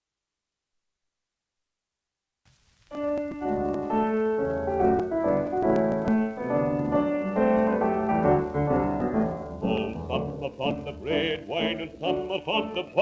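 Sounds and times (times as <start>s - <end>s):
record hiss: 0.0s - 13.0s
piano music from old record: 2.8s - 13.0s
record surface clicks: 2.9s - 13.0s.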